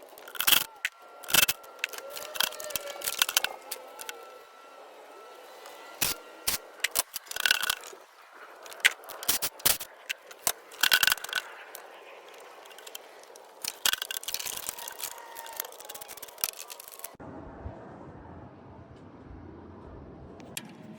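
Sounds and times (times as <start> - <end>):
metal tools clinking and scraping: 0.0 - 4.4, 12.3 - 17.2.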